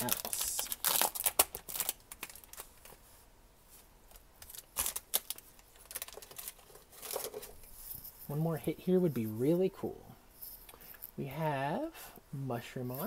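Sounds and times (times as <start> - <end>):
cards crinkling and rustling: 0.0 - 3.1, 4.1 - 7.7.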